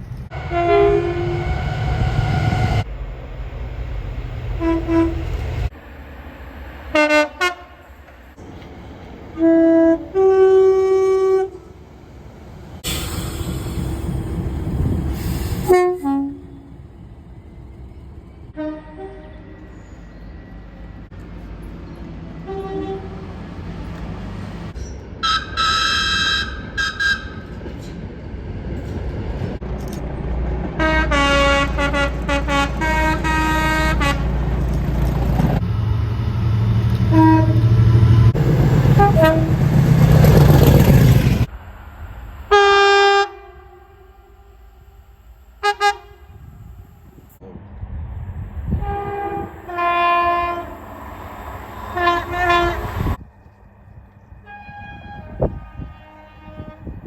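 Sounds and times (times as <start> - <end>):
low rumble of passing train: 0.0 - 57.0
train horn blasts: 0.3 - 2.8, 4.6 - 5.7, 6.9 - 7.8, 9.3 - 11.8, 15.6 - 16.8, 18.5 - 19.7, 22.4 - 23.3, 25.2 - 27.5, 30.8 - 34.5, 36.9 - 40.4, 42.5 - 45.0, 45.6 - 46.7, 48.7 - 53.2, 54.4 - 57.0.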